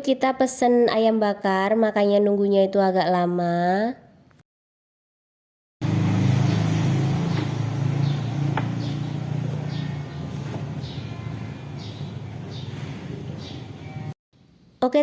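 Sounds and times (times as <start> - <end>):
vehicle engine: 5.8 - 14.2.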